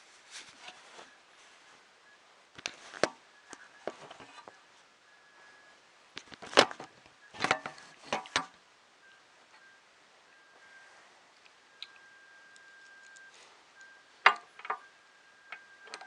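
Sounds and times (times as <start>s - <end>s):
parts clicking on a hard surface: 14.2s - 14.9s.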